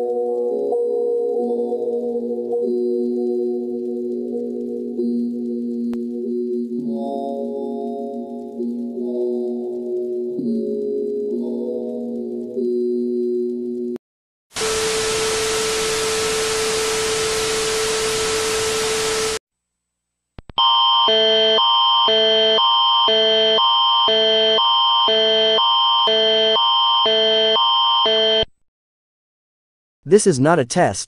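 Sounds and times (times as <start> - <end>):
loud hiss: 14.6 - 19.4
alternating two-chord alarm tone: 20.6 - 28.5.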